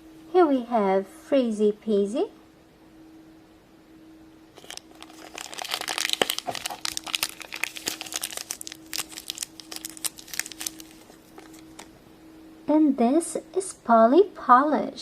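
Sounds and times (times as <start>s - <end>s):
plastic packaging crinkling: 4.6s - 11.9s.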